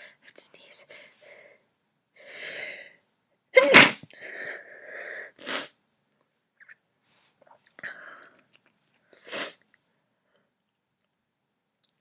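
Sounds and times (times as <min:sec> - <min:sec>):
woman sneezing: 0:03.6 - 0:04.1.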